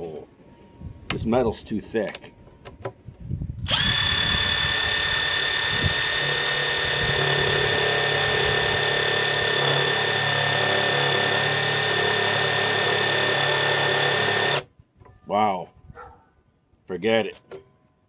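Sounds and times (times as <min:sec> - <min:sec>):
impact driver whining: 0:03.6 - 0:14.7.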